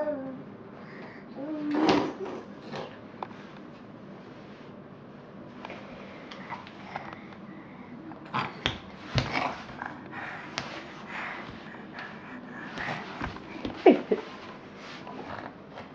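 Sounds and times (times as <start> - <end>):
child sniffing and breathing: 9.4 - 15.4.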